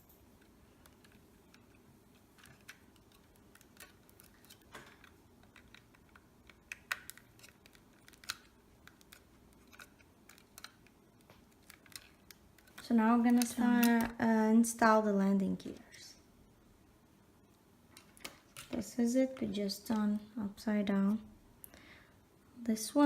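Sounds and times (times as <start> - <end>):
plastic parts clicking and tapping: 0.4 - 14.2.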